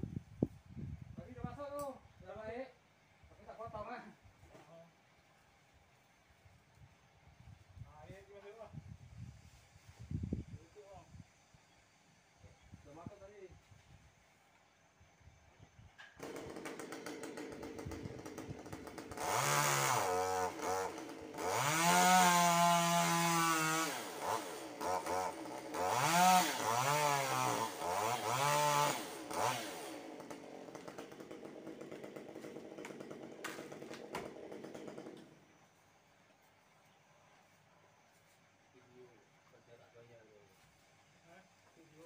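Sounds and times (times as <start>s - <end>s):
chainsaw idling and revving: 16.1s - 35.6s.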